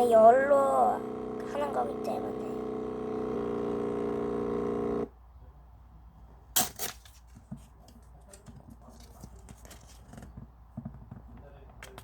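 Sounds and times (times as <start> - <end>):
thermal printer whirring: 0.0 - 5.1
handling clicks and rustles: 6.7 - 12.0.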